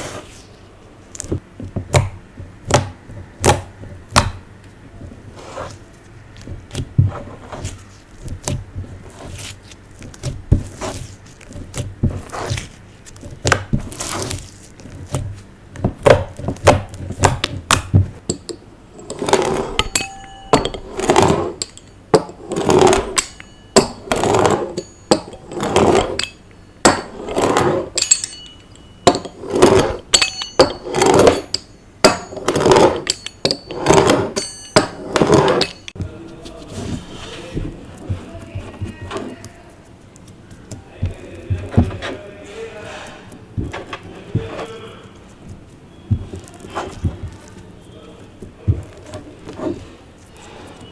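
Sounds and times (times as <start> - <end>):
slime squishing by hand: 1.1 - 18.2, 35.0 - 50.9.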